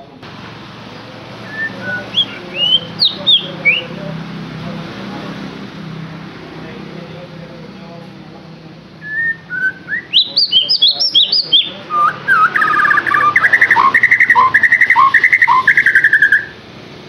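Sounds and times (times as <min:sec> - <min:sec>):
songbird singing: 0:00.7 - 0:05.1, 0:08.9 - 0:16.6.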